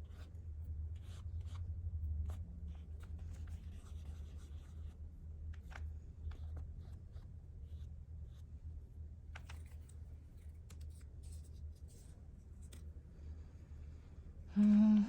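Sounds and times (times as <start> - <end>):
steady low hum: 0.0 - 15.0
paper and tools tapping and scraping: 9.3 - 12.9.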